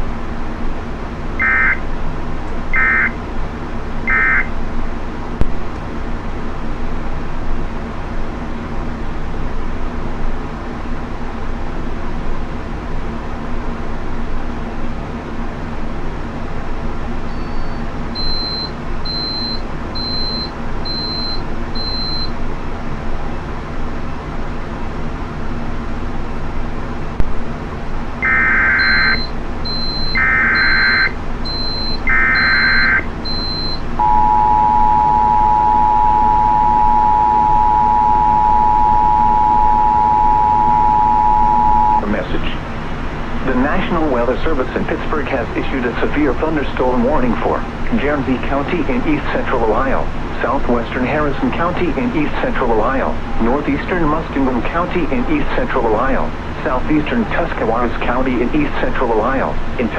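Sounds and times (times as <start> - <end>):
screeching digital data bursts: 1.4 - 1.8, 2.8 - 3.2, 4.1 - 4.5, 28.2 - 42.0
two-tone attention signal: 1.4 - 1.8, 2.8 - 3.2, 4.1 - 4.5, 17.3 - 22.3, 28.2 - 42.1
short high beeps: 17.3 - 22.3, 28.2 - 42.0
constant hiss: 41.8 - 59.9.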